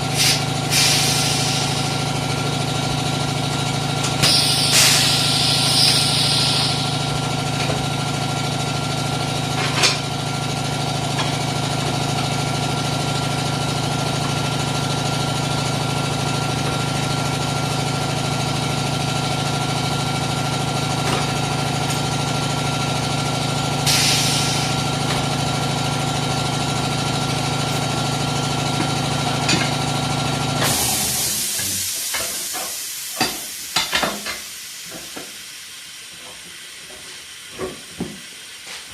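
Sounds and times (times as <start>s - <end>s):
compressed air hissing: 0.1s - 2.0s, 4.2s - 7.3s, 23.8s - 24.9s, 30.6s - 35.6s.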